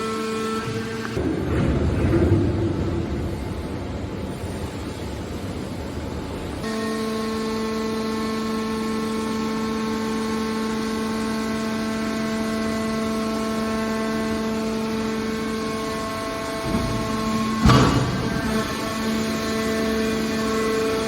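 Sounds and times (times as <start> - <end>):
hydraulic baler mechanical whine: 0.0 - 21.0.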